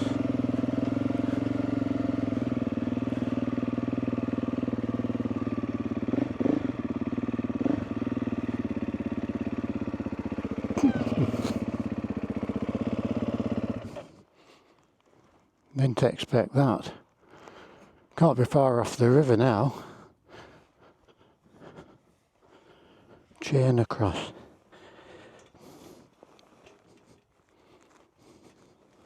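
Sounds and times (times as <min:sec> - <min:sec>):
motorcycle engine running: 0:00.0 - 0:14.3.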